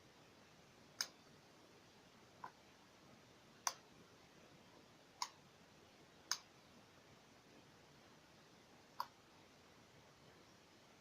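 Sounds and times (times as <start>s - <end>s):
sharp clicks: 1.0s - 1.2s.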